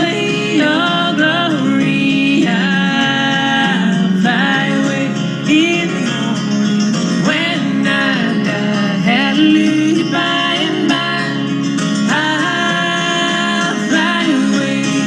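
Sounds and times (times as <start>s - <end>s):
guitar: 0.0s - 15.0s
person singing: 0.0s - 15.0s.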